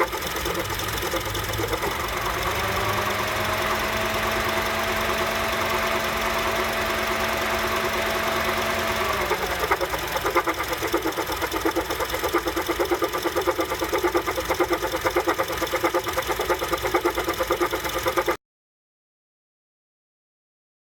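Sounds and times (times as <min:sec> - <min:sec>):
car engine idling hum: 0:00.0 - 0:18.4
rhythmic clunking: 0:09.1 - 0:18.4.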